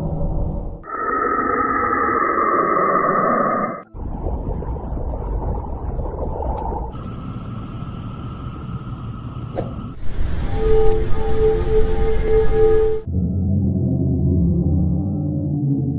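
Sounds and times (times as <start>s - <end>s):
eerie rushing noise with high tone: 0.0s - 4.9s
deep rumbling noise: 0.0s - 15.9s.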